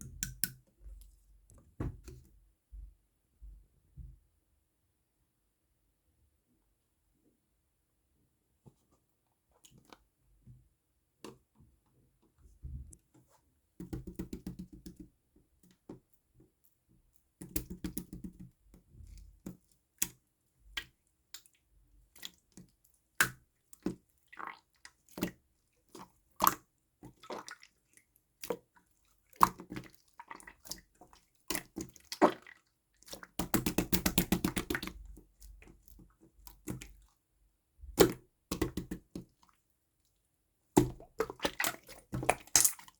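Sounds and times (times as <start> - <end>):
slime squelching by hand: 19.0 - 37.2, 40.8 - 42.9.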